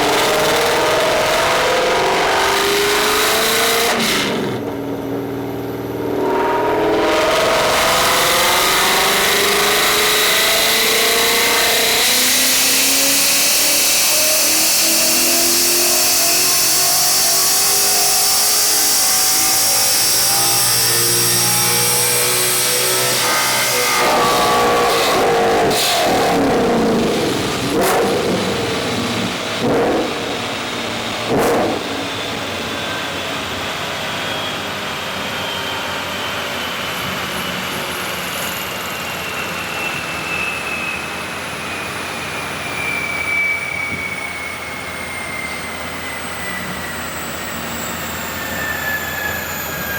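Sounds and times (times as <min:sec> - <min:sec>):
car engine revving at full throttle: 0:00.0 - 0:43.4
whine falling in pitch: 0:06.0 - 0:09.9, 0:23.2 - 0:33.4.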